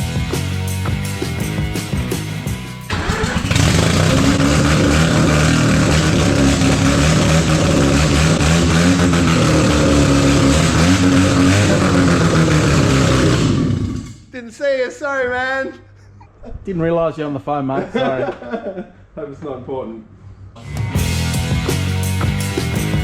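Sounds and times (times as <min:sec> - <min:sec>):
music with drum beat: 0:00.0 - 0:02.9, 0:20.6 - 0:23.0
rotary engine revving: 0:02.9 - 0:14.3.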